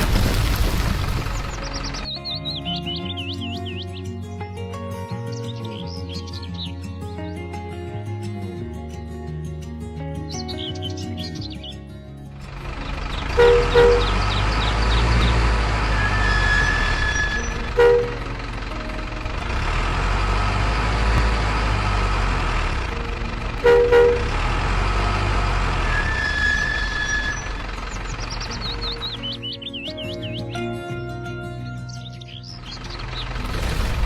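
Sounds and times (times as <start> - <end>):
truck engine rumbling: 0.0 - 3.8, 12.2 - 30.8, 31.5 - 34.0
horn toots: 13.2 - 14.9, 15.8 - 18.4, 23.5 - 27.6.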